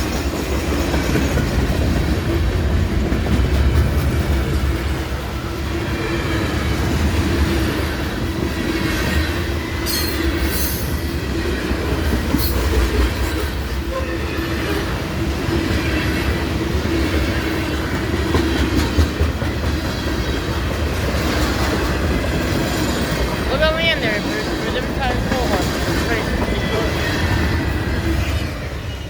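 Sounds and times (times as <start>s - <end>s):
freight train cars rumbling: 0.0s - 29.0s.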